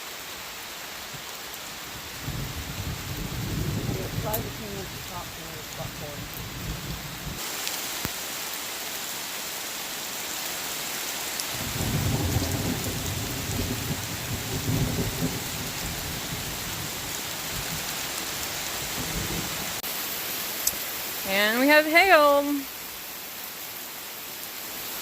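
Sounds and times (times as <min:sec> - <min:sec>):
heavy rain falling: 0:00.0 - 0:25.0
thunder rumbling: 0:02.1 - 0:07.4, 0:11.6 - 0:17.8.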